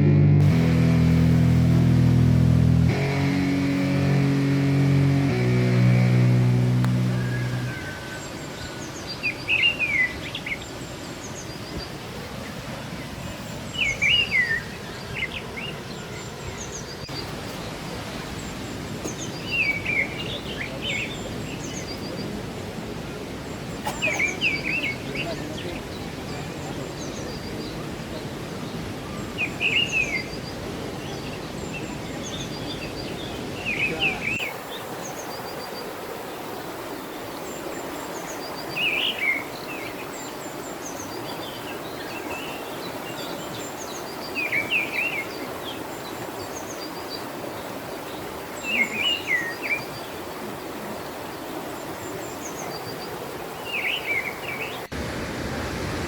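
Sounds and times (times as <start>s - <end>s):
bird calling high notes: 0.0s - 8.0s
steady rushing background noise: 0.4s - 7.8s.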